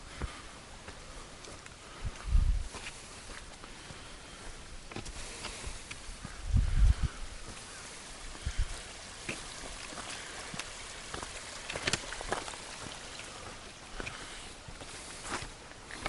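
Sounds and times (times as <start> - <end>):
falling water hissing: 7.4 - 16.0.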